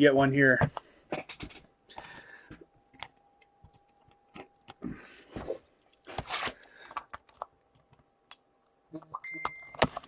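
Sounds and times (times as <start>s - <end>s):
cards and packaging clicking: 5.9s - 8.5s, 9.4s - 10.0s
wrapper rustling and tearing: 6.1s - 6.6s.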